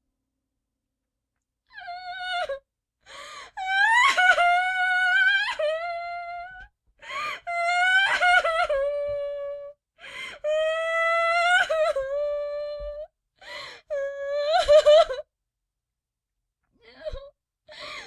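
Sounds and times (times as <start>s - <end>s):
gasping in-breath: 3.0s - 3.6s, 10.0s - 10.4s, 13.4s - 13.9s, 17.7s - 18.0s.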